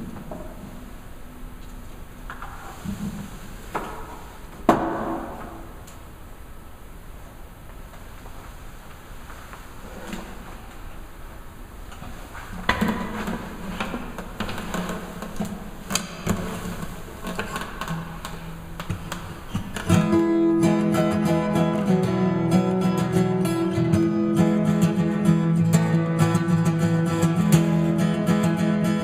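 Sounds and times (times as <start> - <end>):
acoustic guitar playing: 15.1 - 29.0.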